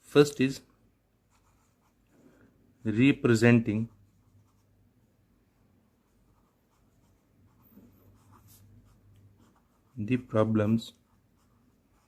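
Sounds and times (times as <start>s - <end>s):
pen scratching handwriting: 6.0s - 12.0s.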